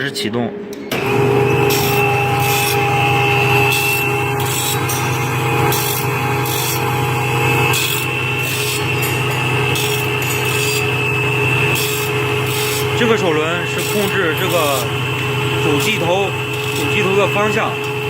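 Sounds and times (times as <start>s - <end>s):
motor hum: 0.9s - 18.0s.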